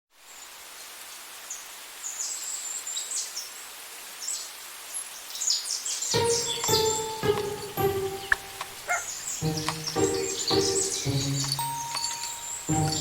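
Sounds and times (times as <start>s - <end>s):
steady outdoor hiss: 0.2s - 13.0s
birds chirping: 5.2s - 13.0s.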